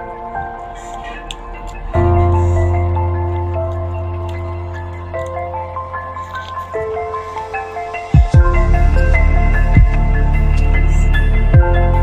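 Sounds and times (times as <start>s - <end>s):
deep bass swoops: 8.2s - 12.0s.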